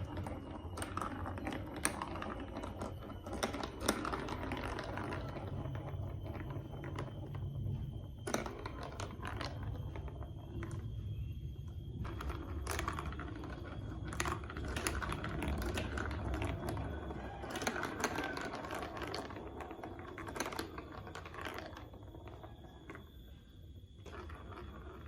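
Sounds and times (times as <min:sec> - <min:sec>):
plastic toy pieces clattering: 0:12.1 - 0:23.0.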